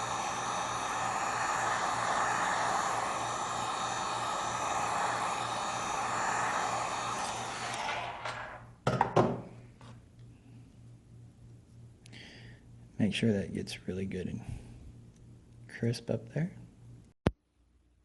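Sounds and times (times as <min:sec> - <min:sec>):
heat gun blowing: 0:00.0 - 0:08.6.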